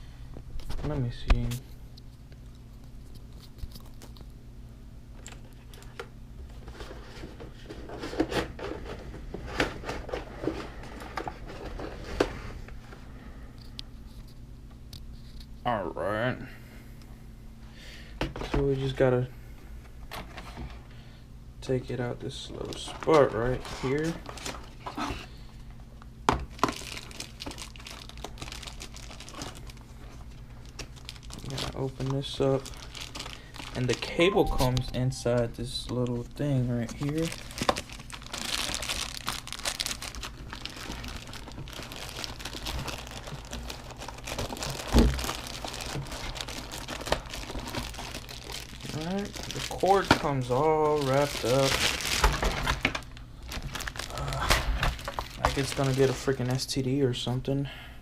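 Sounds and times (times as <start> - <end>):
steady low hum: 0.0 - 58.0
packaging rustling and scraping: 5.2 - 13.0, 22.4 - 25.5, 26.5 - 56.6.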